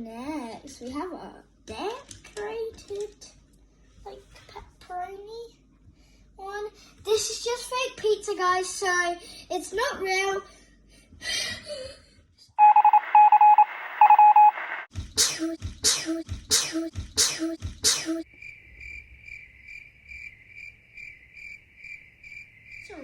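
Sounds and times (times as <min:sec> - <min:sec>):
short sharp beeps: 0:12.6 - 0:14.6.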